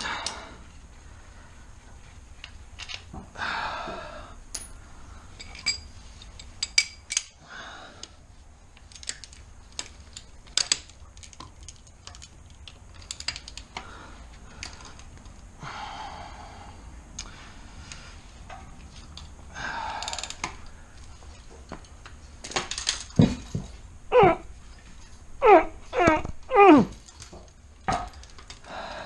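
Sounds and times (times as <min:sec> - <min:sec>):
metallic clicks of hand tools: 0:05.4 - 0:07.4.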